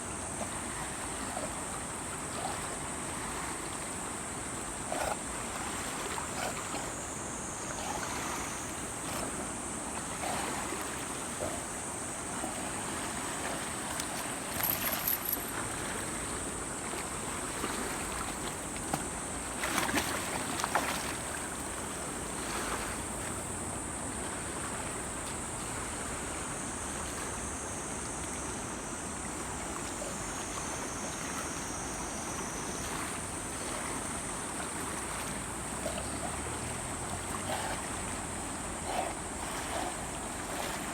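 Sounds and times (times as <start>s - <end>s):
river water rushing: 2.3s - 16.3s.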